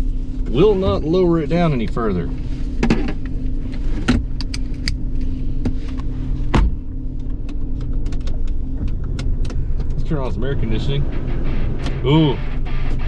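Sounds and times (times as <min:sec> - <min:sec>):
car engine idling: 0:00.0 - 0:13.0
sharp clicks and rattles: 0:07.2 - 0:13.0.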